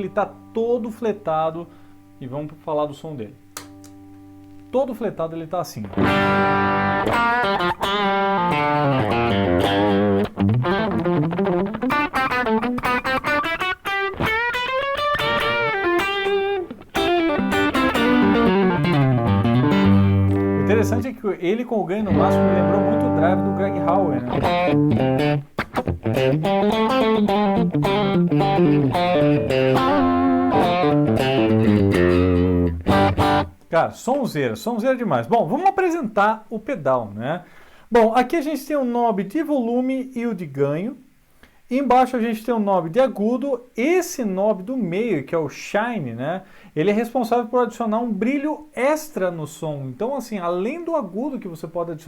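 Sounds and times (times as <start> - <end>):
overdriven electric guitar: 5.8 - 21.1, 22.0 - 33.7.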